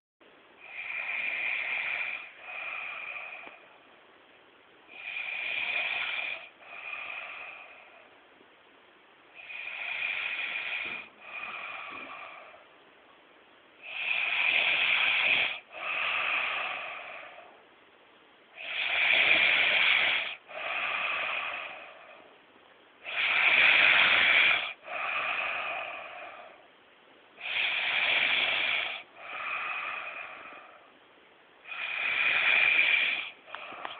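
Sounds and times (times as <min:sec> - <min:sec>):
man snoring heavily: 0:00.6 - 0:03.7, 0:04.9 - 0:08.0, 0:09.4 - 0:12.6, 0:13.8 - 0:17.5, 0:18.6 - 0:22.2, 0:23.0 - 0:26.6, 0:27.4 - 0:30.9, 0:31.6 - 0:33.9.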